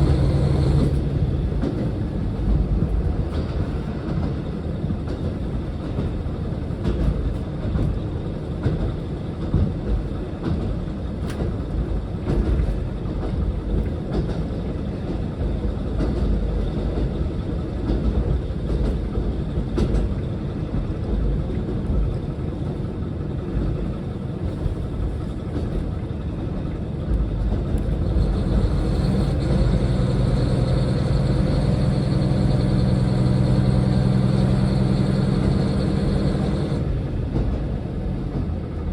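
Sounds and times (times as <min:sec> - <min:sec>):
low hum: 0:00.0 - 0:01.6, 0:27.1 - 0:36.9
rail clicks: 0:00.0 - 0:38.9
train rumbling on rails: 0:00.0 - 0:38.9.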